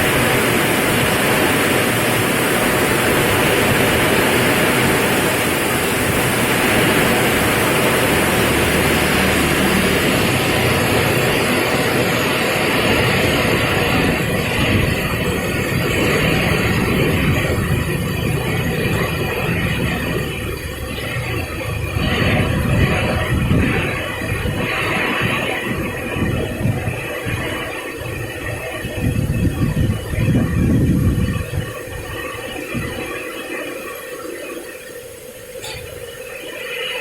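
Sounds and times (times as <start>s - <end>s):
heavy rain pouring: 0.0s - 37.0s
strong wind: 0.0s - 37.0s
low rumble: 5.2s - 26.7s.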